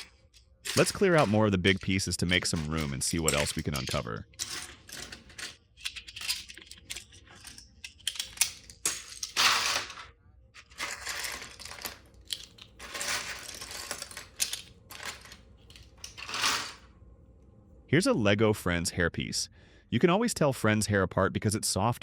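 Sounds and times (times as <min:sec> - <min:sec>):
plastic bricks clattering: 0:00.0 - 0:16.8.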